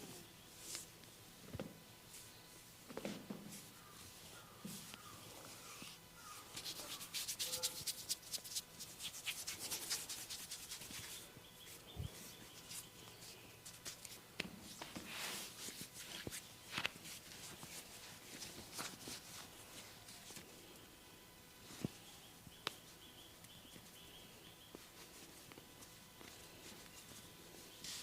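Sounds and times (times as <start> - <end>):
fingers scratching through hair: 3.8 - 18.0.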